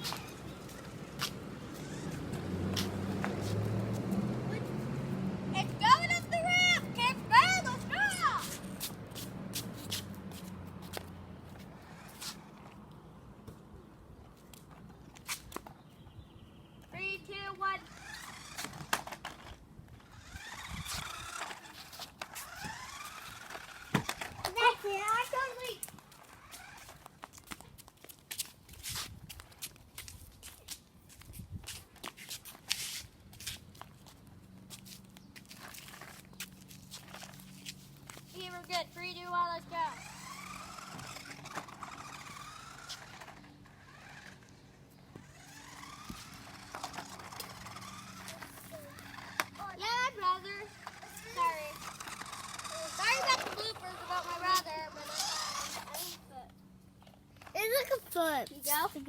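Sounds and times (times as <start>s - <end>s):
toy car electric motor whining: 0.0s - 10.0s, 10.9s - 12.7s, 17.0s - 27.6s, 35.5s - 59.0s.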